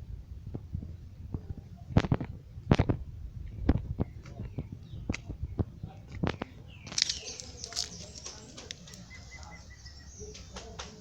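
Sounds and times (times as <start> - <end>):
birds chirping: 3.4 - 11.0.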